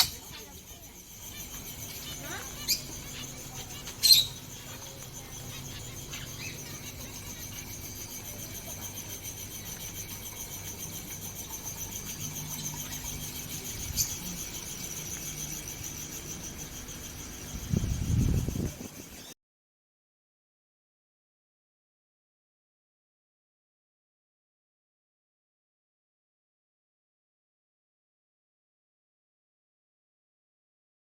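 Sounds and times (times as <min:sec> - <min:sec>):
insects trilling: 0:00.0 - 0:19.4.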